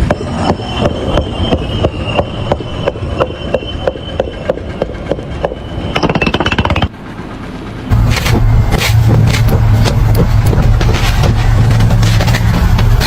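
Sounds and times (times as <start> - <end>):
regular knocking: 6.0 - 6.9
fast rattle: 6.0 - 7.0.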